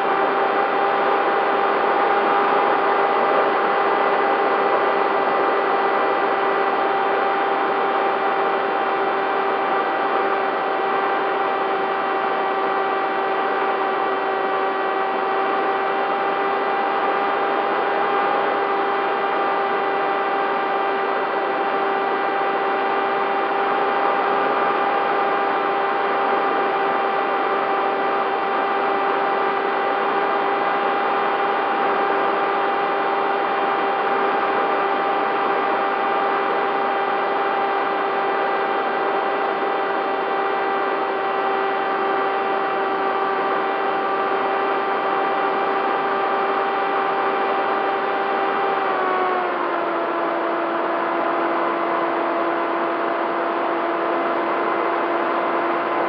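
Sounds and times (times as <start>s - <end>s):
electric motor and propeller whine: 0.0s - 56.0s.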